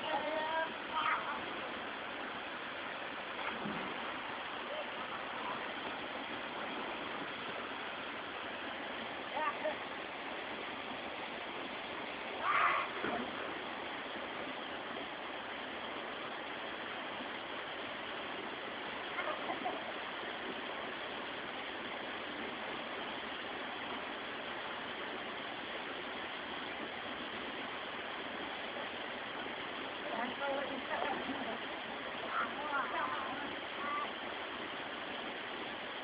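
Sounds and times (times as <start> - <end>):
waterfall rushing: 0.0 - 36.0.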